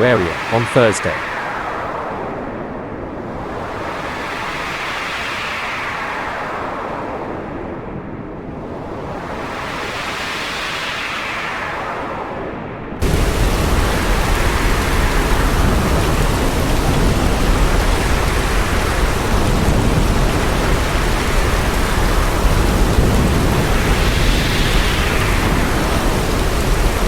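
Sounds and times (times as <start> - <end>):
driving rain: 0.0 - 1.4, 13.0 - 27.0
gusting wind roar: 12.3 - 27.0.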